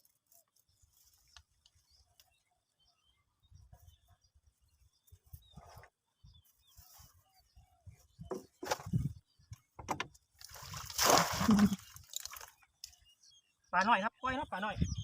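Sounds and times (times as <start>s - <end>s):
water splashing and sloshing: 10.3s - 12.6s.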